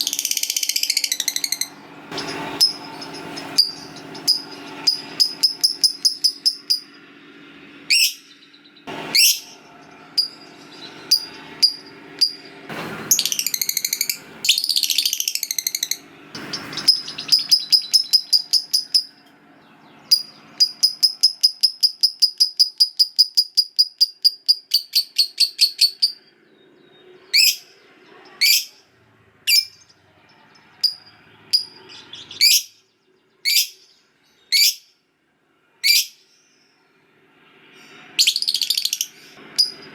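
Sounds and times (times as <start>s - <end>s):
lovebird chattering: 0.0s - 7.0s, 7.9s - 8.4s, 9.1s - 9.6s, 10.2s - 12.4s, 13.1s - 19.2s, 20.1s - 26.2s, 38.2s - 39.9s
sharp rising bird chirps: 0.0s - 35.0s, 35.8s - 39.9s
harsh buzzy bird calls: 0.0s - 39.9s.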